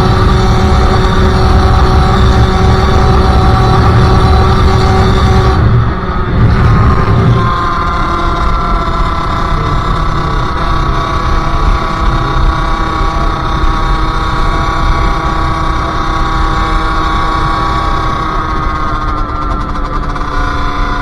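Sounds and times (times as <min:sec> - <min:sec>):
low rumble: 0:00.0 - 0:16.6
two-stroke motorcycle engine: 0:00.0 - 0:21.0.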